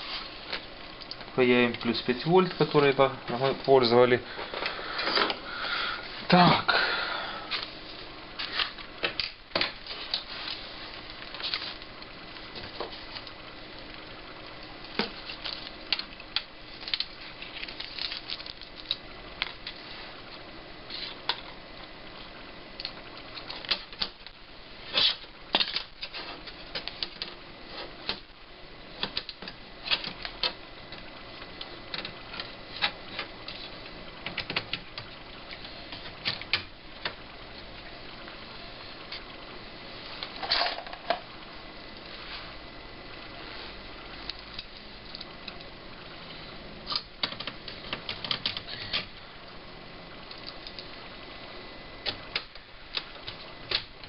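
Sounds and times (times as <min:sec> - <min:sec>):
parts clattering: 0:40.3 - 0:41.3
small parts clicking and tapping: 0:46.9 - 0:49.1.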